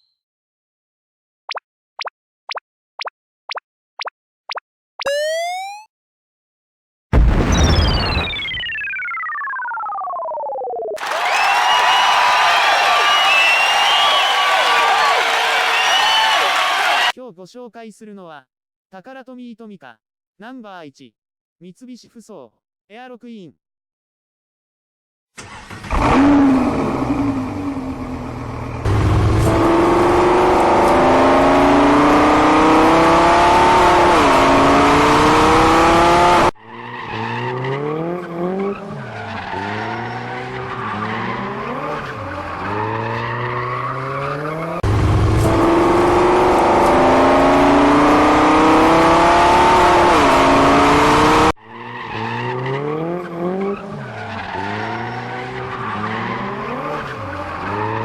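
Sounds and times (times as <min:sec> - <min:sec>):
racing car engine revving: 0:25.4 - 0:58.0.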